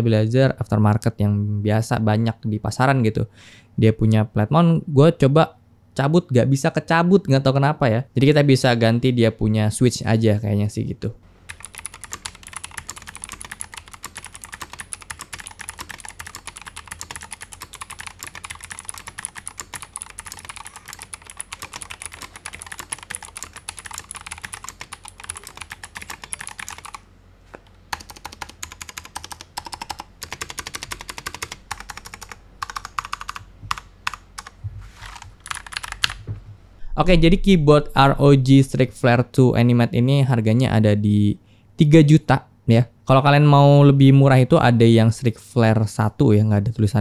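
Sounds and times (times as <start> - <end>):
fast typing on mechanical keyboard: 11.5 - 27.0, 27.9 - 36.2.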